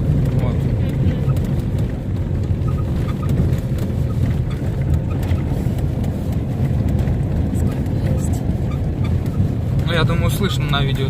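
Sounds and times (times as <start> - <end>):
car engine and tyres rumbling: 0.0 - 11.0
car jolting over bumps: 0.0 - 11.0
suspension creaks: 0.0 - 11.0.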